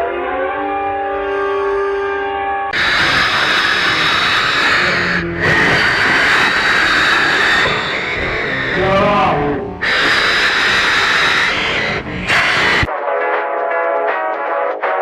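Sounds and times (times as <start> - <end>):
distorted emergency alert: 2.7 - 12.9.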